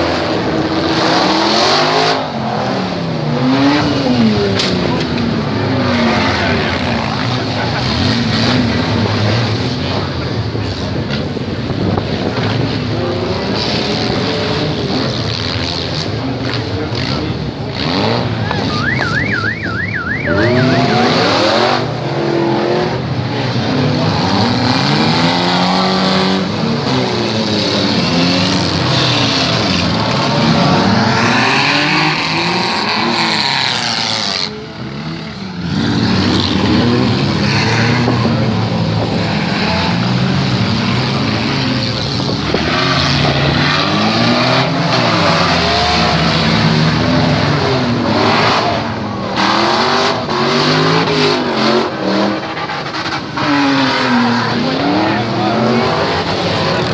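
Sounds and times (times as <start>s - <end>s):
car engines revving: 0.0s - 56.9s
short warbling tone: 18.6s - 21.6s.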